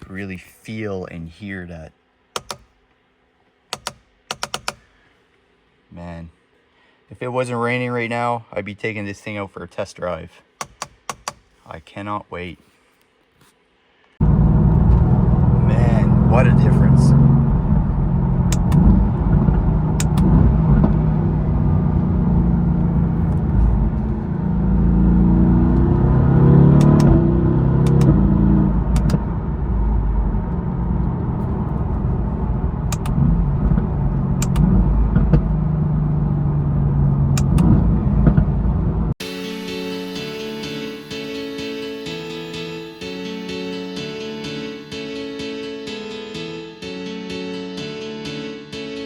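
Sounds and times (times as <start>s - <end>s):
sharp clicks: 2.4s - 2.7s, 3.7s - 4.8s, 18.5s - 18.9s, 20.0s - 20.3s, 27.8s - 28.2s, 28.9s - 29.2s, 32.9s - 33.2s, 34.4s - 34.7s, 37.4s - 37.8s
car engine accelerating: 14.2s - 39.3s.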